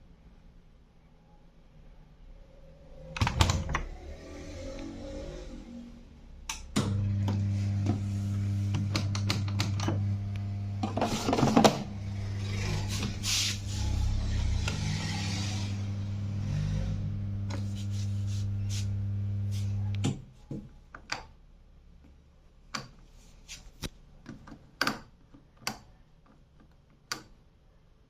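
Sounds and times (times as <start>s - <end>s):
washing machine electric hum: 6.6s - 20.3s.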